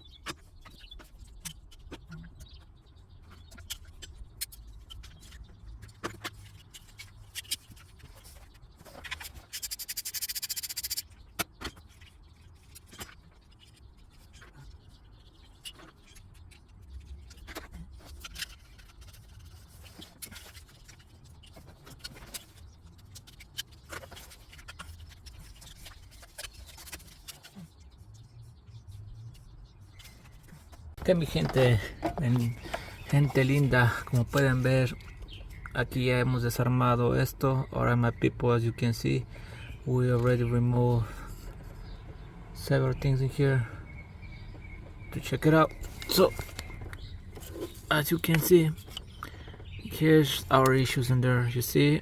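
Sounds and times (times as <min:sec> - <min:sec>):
tools clicking and knocking: 0:31.4 - 0:33.2.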